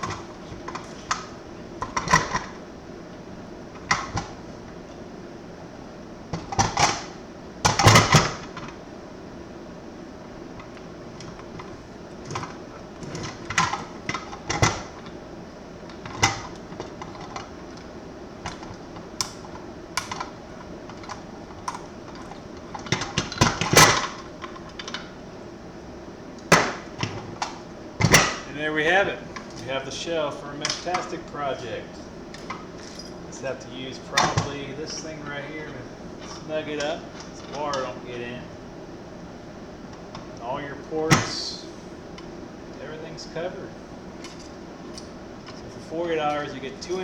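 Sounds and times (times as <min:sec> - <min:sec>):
hardware clicks and knocks: 0:34.2 - 0:34.6.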